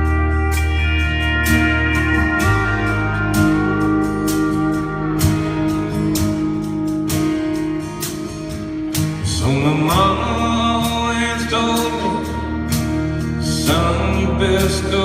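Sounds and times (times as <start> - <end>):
live band playing country song: 0.0 - 15.0
steady drum beat: 0.0 - 15.0
person singing: 9.1 - 15.0.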